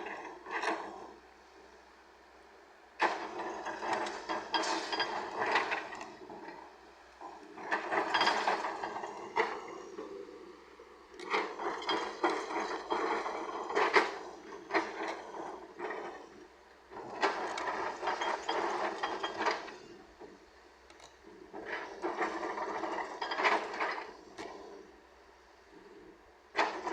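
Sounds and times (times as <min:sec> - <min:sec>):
metal clanks and scraping: 0:03.1 - 0:06.6, 0:07.6 - 0:09.8, 0:11.2 - 0:16.4, 0:17.0 - 0:19.9.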